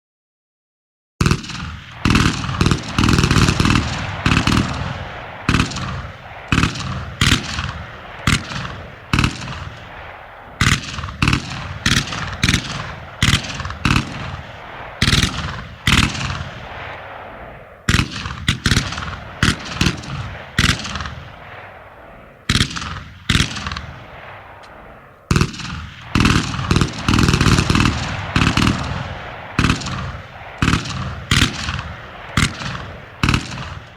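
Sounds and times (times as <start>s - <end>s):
machine gun firing: 1.2s - 16.9s, 25.3s - 33.9s
rolling echo of gunfire: 1.2s - 33.9s.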